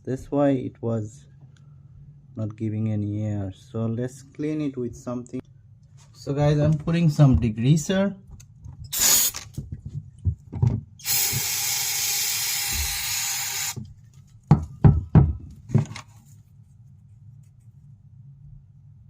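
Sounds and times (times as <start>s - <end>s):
aerosol spray hiss: 11.1s - 13.8s.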